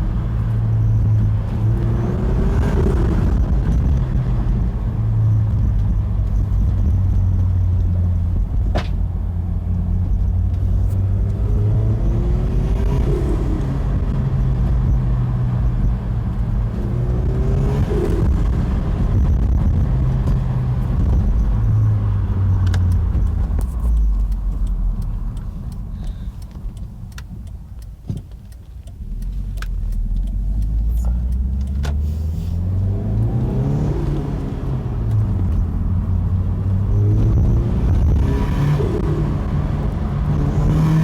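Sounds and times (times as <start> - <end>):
turbocharged car engine: 0.0 - 41.0
scattered clicks: 22.6 - 32.0.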